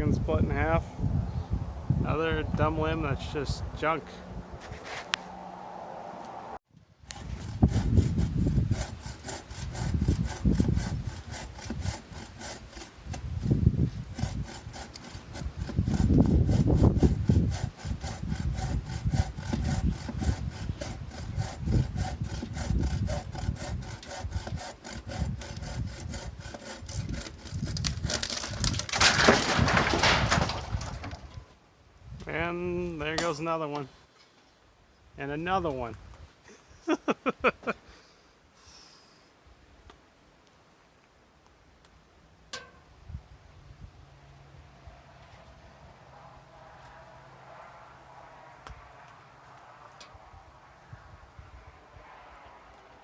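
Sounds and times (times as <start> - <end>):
handsaw cutting dry wood: 7.0 - 31.2.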